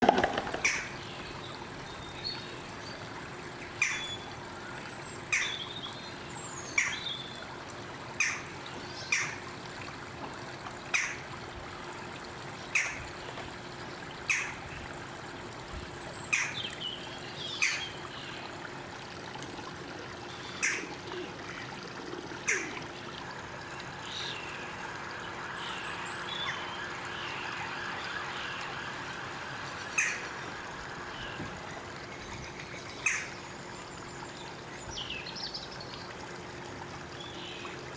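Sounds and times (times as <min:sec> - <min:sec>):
stream water trickling: 0:00.0 - 0:37.9
birds chirping: 0:22.4 - 0:35.7.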